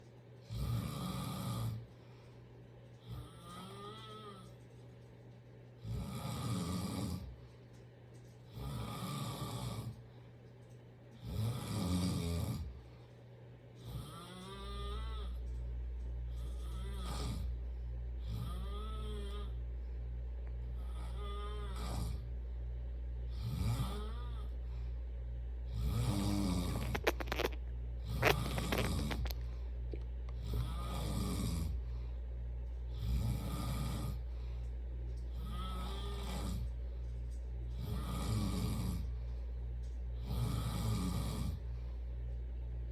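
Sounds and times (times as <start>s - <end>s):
steady low hum: 0.0s - 42.9s
loud snoring: 0.5s - 1.9s, 5.8s - 7.3s, 8.5s - 10.0s, 11.2s - 12.8s, 13.8s - 15.4s, 16.4s - 17.6s, 18.2s - 19.6s, 20.8s - 22.3s, 23.3s - 24.6s, 25.7s - 29.4s, 30.4s - 31.9s, 32.9s - 34.3s, 35.3s - 36.8s, 37.7s - 39.2s, 40.2s - 41.7s.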